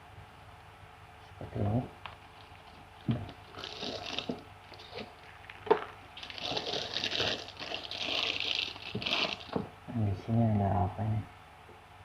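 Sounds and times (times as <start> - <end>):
packaging rustling: 2.1 - 9.7.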